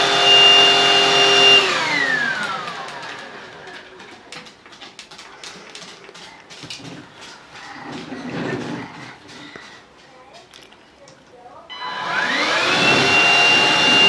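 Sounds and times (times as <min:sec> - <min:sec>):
vacuum cleaner motor whine: 0:00.0 - 0:04.0, 0:11.7 - 0:14.0.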